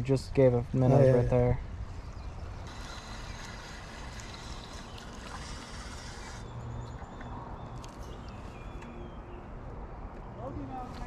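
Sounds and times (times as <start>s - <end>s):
river water running: 1.9s - 8.8s.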